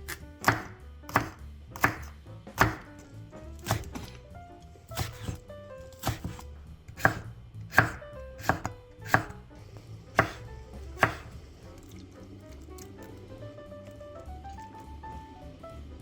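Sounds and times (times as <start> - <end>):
knife chopping on cutting board: 0.0 - 4.2, 4.9 - 9.4, 10.1 - 11.4.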